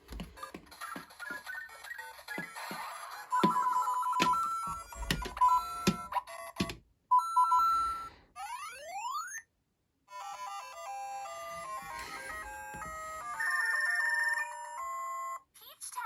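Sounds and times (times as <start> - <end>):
knocks: 3.4 - 6.8.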